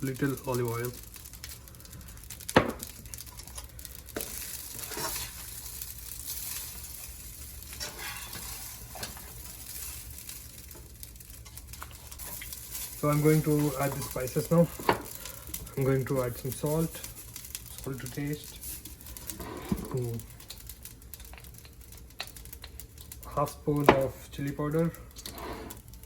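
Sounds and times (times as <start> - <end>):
food sizzling in a pan: 0.0 - 26.0
utensil knocking on a pan: 2.6 - 2.8
utensil scraping a pan: 3.4 - 5.7, 7.7 - 10.2, 18.6 - 20.2, 25.2 - 25.9.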